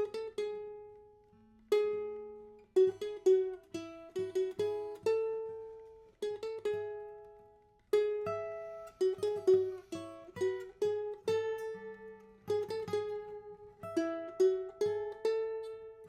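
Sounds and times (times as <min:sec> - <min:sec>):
plucked string melody: 0:00.0 - 0:16.0.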